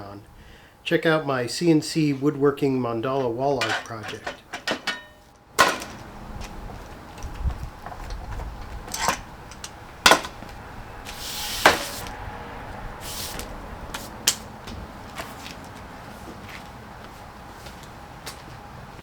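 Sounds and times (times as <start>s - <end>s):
wood scraping and sliding: 3.1s - 12.2s.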